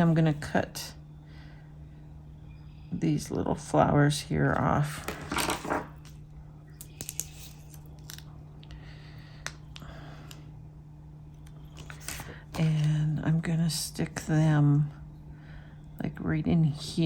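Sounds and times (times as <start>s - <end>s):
steady low hum: 0.0s - 17.0s
paper rustling: 5.1s - 6.0s, 11.7s - 12.5s.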